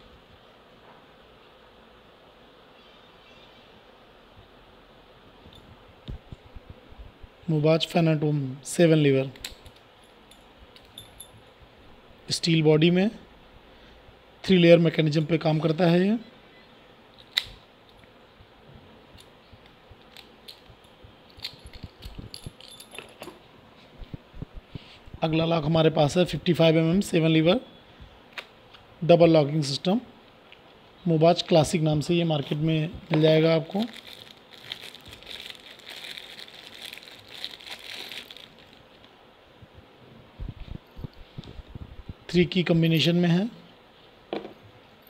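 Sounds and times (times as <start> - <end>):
padlock and keys clicking: 20.0 - 23.4
packaging crinkling: 33.7 - 39.1.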